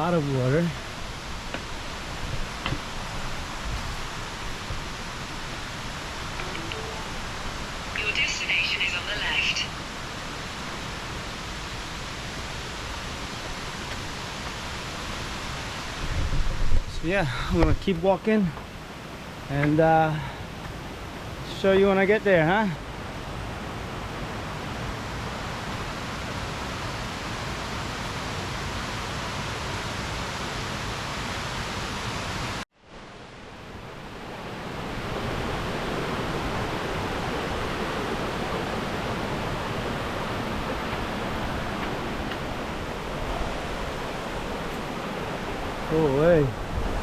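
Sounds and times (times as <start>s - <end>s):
waterfall rushing: 0.0s - 16.1s, 34.0s - 47.0s.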